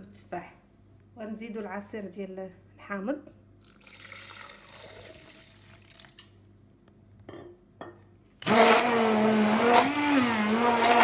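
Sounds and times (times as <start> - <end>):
blender motor running: 8.4 - 11.0.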